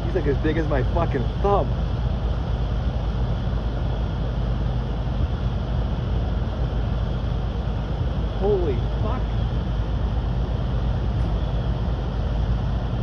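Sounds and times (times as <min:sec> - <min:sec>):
low rumble with faint hum: 0:00.0 - 0:13.0.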